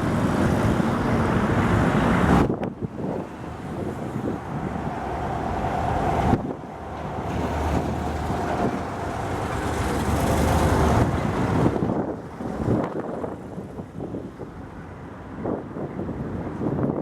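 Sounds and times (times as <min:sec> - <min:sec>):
tram whine and rumble: 0:00.0 - 0:17.0
wind buffeting microphone: 0:00.0 - 0:17.0.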